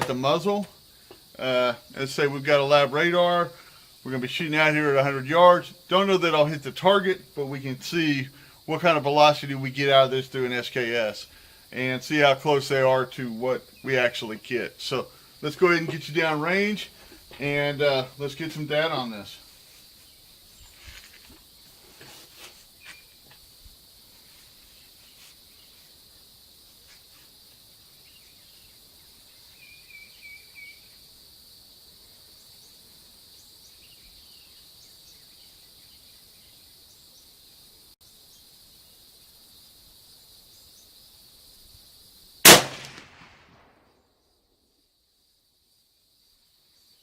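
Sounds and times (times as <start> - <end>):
insect buzz: 0.0 - 47.0
chirps: 27.8 - 31.0
rifle shot with echo: 42.5 - 43.9.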